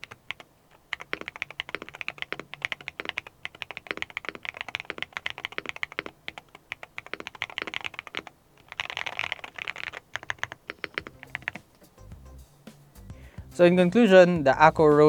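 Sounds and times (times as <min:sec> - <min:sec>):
mechanical keyboard typing: 0:00.0 - 0:11.9.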